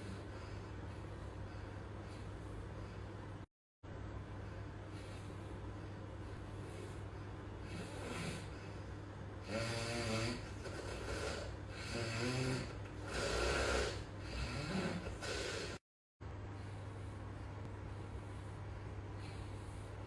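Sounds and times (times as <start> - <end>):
steady low hum: 0.0 - 20.0
man snoring: 7.6 - 8.8, 9.4 - 15.8.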